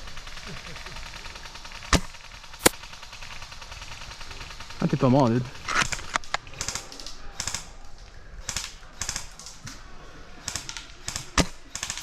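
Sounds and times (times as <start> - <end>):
airsoft gun bursts: 10.4 - 12.0.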